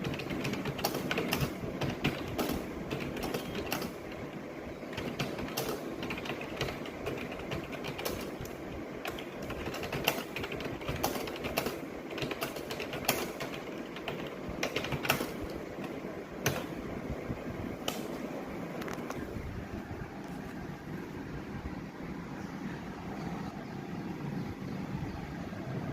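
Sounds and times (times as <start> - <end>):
fast typing on keyboard: 0.0 - 16.8
low steady hum: 0.0 - 25.9.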